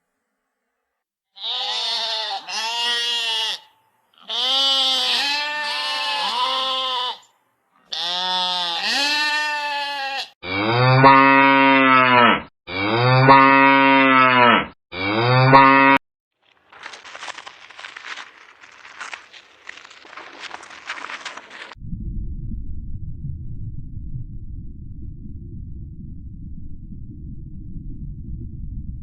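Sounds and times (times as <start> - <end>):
wavering bleats: 1.4 - 10.4
cow mooing: 7.9 - 16.0.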